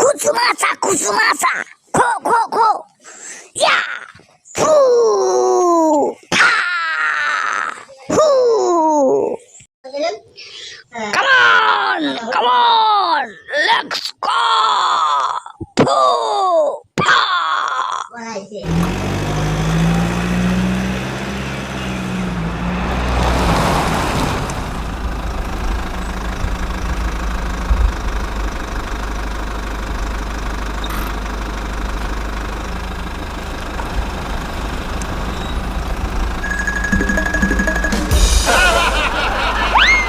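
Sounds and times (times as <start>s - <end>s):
vehicle engine rumbling: 18.7s - 40.0s
steady high tone: 36.4s - 40.0s.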